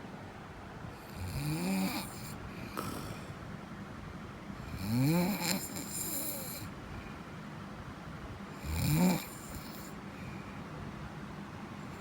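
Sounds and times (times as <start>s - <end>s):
person snoring: 1.0s - 3.3s, 4.7s - 6.7s, 8.6s - 10.0s.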